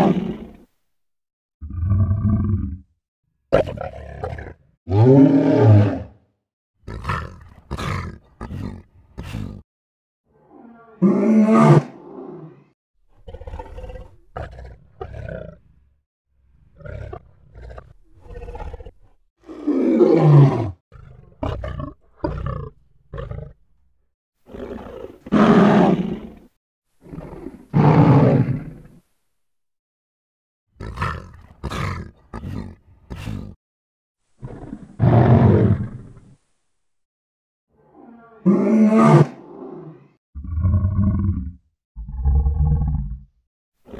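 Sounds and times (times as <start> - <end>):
lion roaring: 1.6 - 2.8, 3.6 - 6.2, 10.4 - 15.6, 16.7 - 23.6, 24.5 - 26.3, 37.8 - 43.3
lion grunts: 6.9 - 9.6, 30.8 - 33.6.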